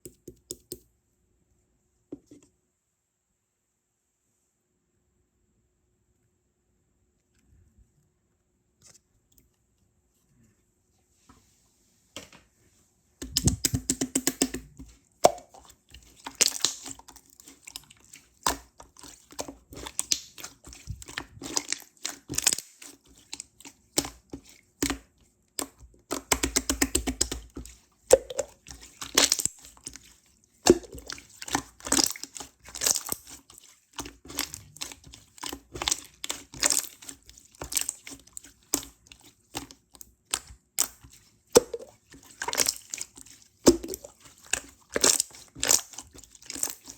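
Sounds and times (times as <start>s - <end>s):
air bubbles popping: 13.2s - 15.6s, 28.1s - 28.6s, 30.7s - 31.2s, 41.6s - 41.9s, 43.7s - 44.1s
slime squeezed by hand: 40.9s - 46.9s.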